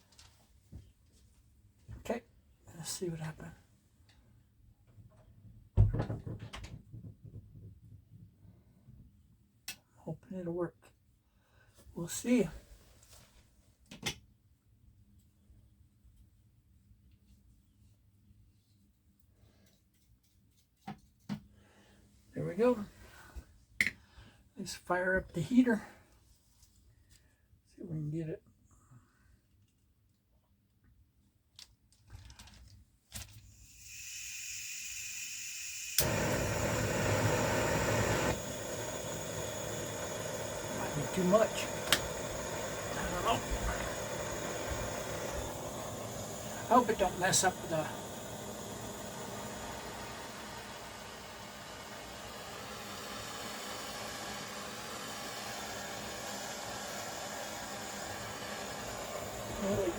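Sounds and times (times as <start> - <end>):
gas hissing from valve: 33.5 - 59.9
igniter click: 35.9 - 51.8
torch flame rushing: 36.0 - 59.9.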